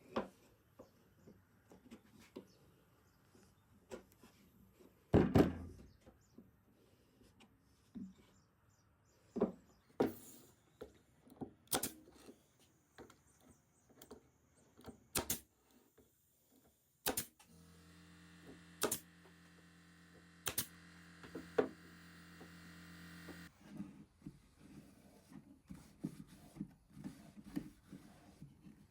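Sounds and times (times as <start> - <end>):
electric motor hum: 17.4 - 23.5.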